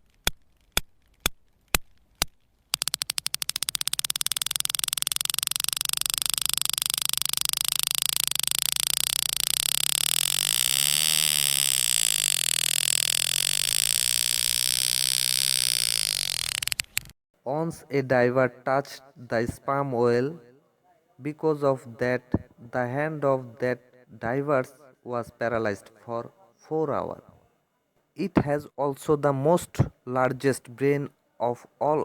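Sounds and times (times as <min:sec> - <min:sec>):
sperm whale clicks: 0:00.2 - 0:17.1
rapid whale click train buzz: 0:02.7 - 0:17.1.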